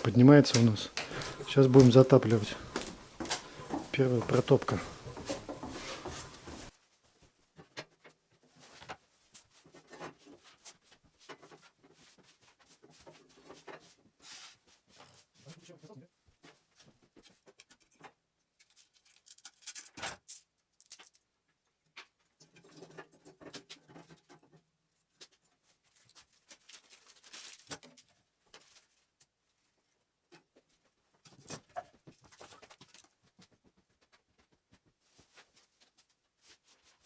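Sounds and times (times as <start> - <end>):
wood stove fire crackling: 0.0 - 7.3.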